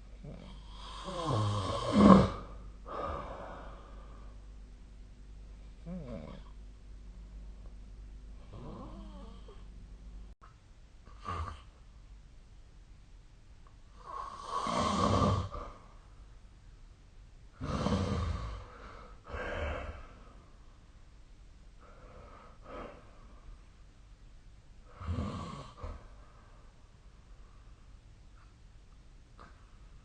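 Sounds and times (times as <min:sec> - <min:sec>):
person snoring: 0:00.2 - 0:04.3, 0:05.8 - 0:06.6, 0:08.4 - 0:09.6, 0:14.0 - 0:15.8, 0:17.6 - 0:20.2, 0:24.9 - 0:26.1.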